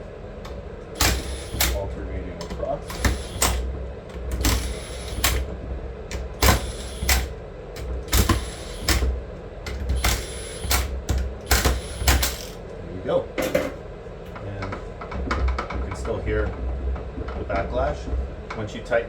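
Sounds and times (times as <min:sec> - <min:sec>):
impact wrench rattling bursts: 0:00.5 - 0:01.9, 0:02.5 - 0:05.5, 0:06.1 - 0:12.7.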